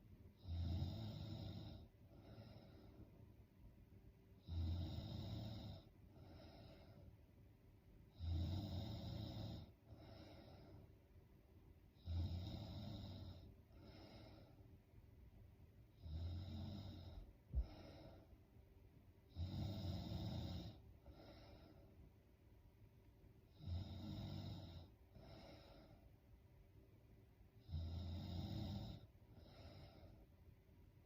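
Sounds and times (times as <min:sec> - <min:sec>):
woman snoring: 0:00.4 - 0:02.6, 0:04.4 - 0:06.8, 0:08.1 - 0:10.5, 0:12.0 - 0:14.4, 0:16.0 - 0:18.0, 0:19.3 - 0:21.7, 0:23.5 - 0:26.0, 0:27.6 - 0:30.1
soft breath: 0:01.5 - 0:03.4, 0:05.4 - 0:07.3, 0:09.1 - 0:11.1, 0:12.8 - 0:14.9, 0:16.4 - 0:18.5, 0:19.7 - 0:22.2, 0:23.6 - 0:26.3, 0:28.9 - 0:30.4.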